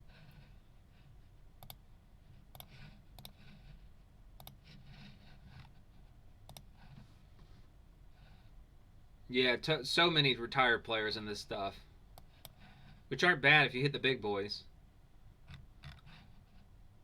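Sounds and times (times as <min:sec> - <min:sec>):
soft rustling: 0:04.7 - 0:08.5.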